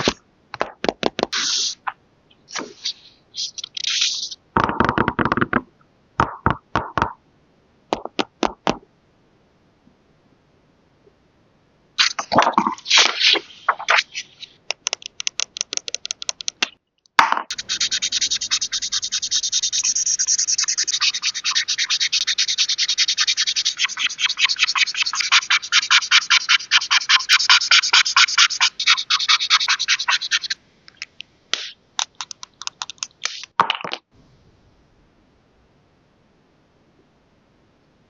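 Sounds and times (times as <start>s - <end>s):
scratching strokes on paper: 17.5s - 30.6s.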